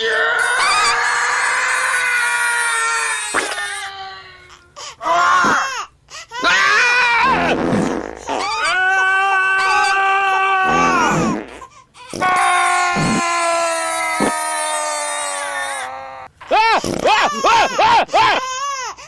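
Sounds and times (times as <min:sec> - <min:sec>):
screaming: 0:00.0 - 0:03.8, 0:05.1 - 0:05.6, 0:06.4 - 0:07.6, 0:08.4 - 0:11.3, 0:12.2 - 0:16.3
baby crying: 0:00.0 - 0:07.5, 0:08.2 - 0:11.4, 0:12.0 - 0:19.0
sputtering fart sounds: 0:05.4 - 0:05.7, 0:07.2 - 0:08.5, 0:10.7 - 0:12.3, 0:12.9 - 0:13.4.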